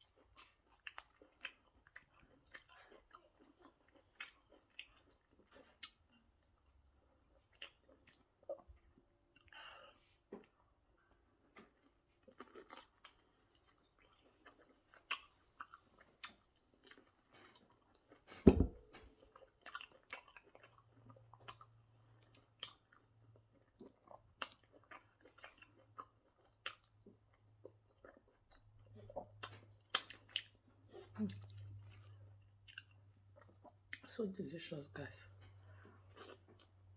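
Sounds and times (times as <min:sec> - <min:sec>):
soft chewing: 0:00.0 - 0:36.9
loud thump: 0:18.5 - 0:19.0.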